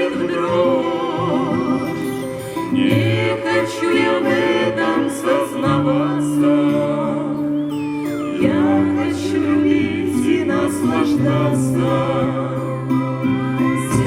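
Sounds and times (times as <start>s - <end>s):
instrumental ensemble music: 0.0s - 14.0s.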